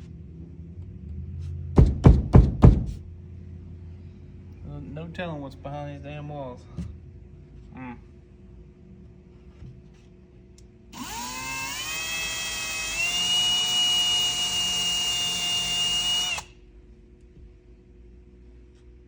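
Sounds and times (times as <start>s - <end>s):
cordless drill motor whine: 10.9s - 16.6s.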